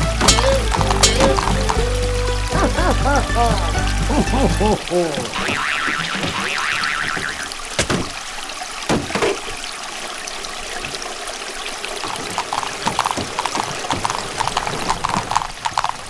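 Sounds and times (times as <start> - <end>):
sharp knocks: 0.0 - 1.8, 5.4 - 8.3, 8.9 - 9.6
water trickling: 0.0 - 16.0.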